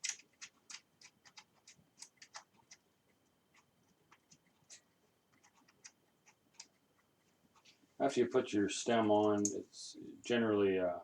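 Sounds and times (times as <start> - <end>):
bolt clicking and scratching: 0.0 - 2.8, 3.5 - 7.8.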